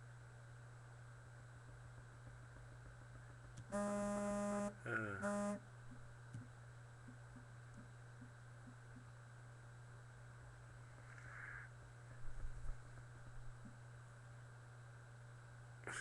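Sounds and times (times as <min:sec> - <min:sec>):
low steady hum: 0:00.0 - 0:16.0
buzzy horn-like tone: 0:03.7 - 0:05.6.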